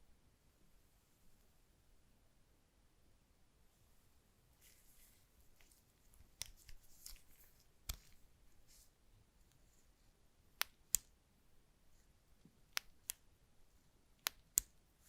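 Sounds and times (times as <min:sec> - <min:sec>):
soft rustling: 0:03.7 - 0:10.2.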